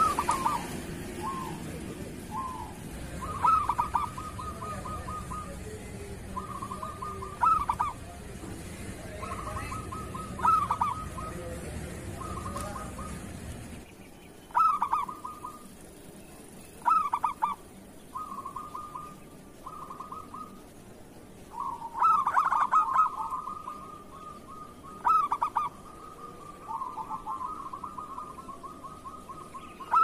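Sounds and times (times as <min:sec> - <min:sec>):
doves cooing: 0:00.0 - 0:30.0.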